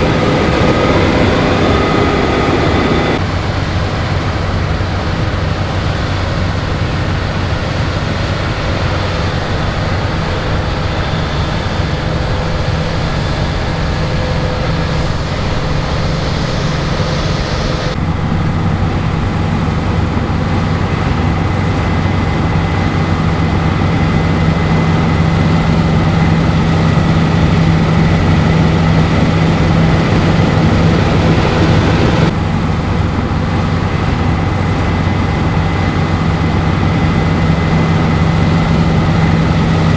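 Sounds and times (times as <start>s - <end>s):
faint high whine: 0.0s - 3.2s
combine harvester engine drone: 0.0s - 39.9s.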